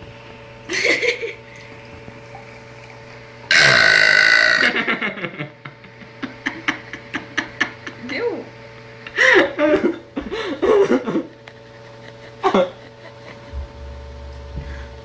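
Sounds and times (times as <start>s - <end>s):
girl burping: 3.5s - 4.8s.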